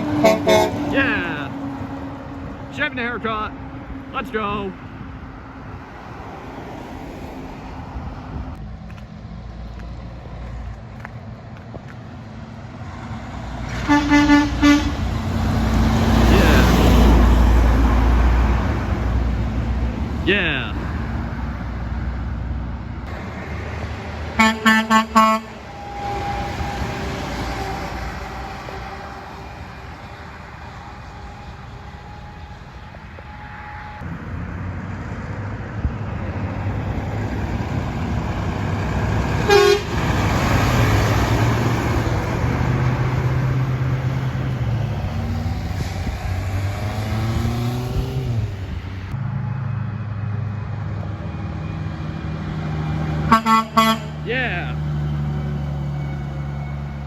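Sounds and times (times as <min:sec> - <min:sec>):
vehicle horn blasts: 0:00.0 - 0:01.0, 0:13.7 - 0:15.0, 0:24.4 - 0:29.1, 0:39.5 - 0:40.0, 0:53.3 - 0:54.2
heavy truck engine: 0:00.0 - 0:57.0
traffic noise: 0:00.0 - 0:57.0.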